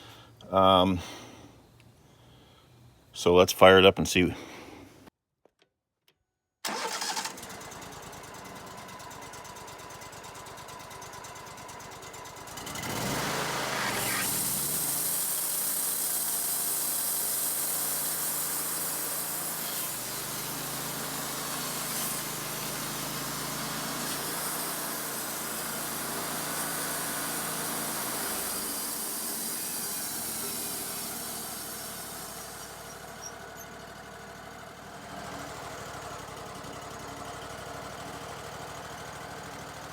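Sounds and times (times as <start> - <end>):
sawmill engine running: 6.7 - 39.9
band blade cutting wood whine: 13.0 - 33.7.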